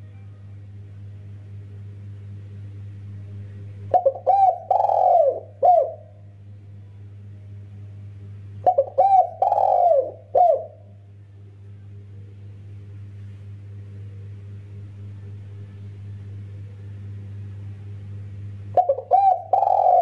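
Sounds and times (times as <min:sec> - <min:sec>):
steady low hum: 0:00.0 - 0:20.0
dove cooing: 0:03.9 - 0:06.2, 0:08.6 - 0:10.9, 0:18.7 - 0:20.0.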